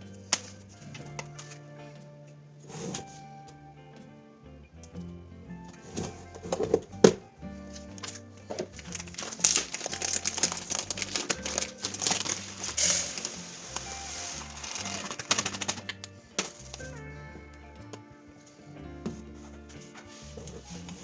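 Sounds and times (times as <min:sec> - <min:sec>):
soft background music: 0:00.0 - 0:21.0
packaging crinkling: 0:08.0 - 0:16.8.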